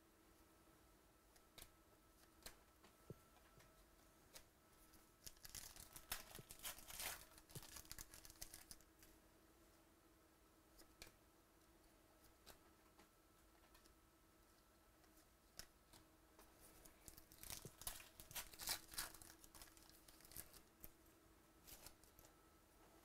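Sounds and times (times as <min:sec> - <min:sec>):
foil wrapper crinkling and tearing: 0:05.2 - 0:08.9, 0:17.0 - 0:20.8.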